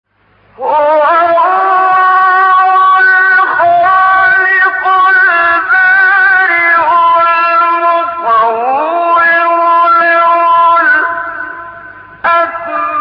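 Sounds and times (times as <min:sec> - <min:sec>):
man chanting unaccompanied: 0:00.6 - 0:13.0.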